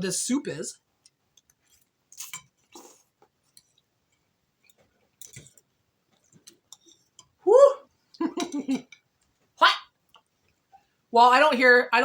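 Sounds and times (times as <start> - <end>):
quiet chewing: 1.0 - 7.4, 8.1 - 10.9
person exclaiming woo: 7.4 - 7.9, 9.6 - 9.8.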